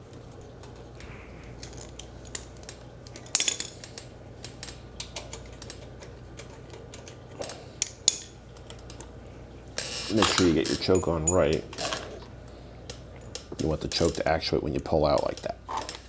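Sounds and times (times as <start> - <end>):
tools and metal parts clinking: 1.6 - 4.0, 9.8 - 12.2.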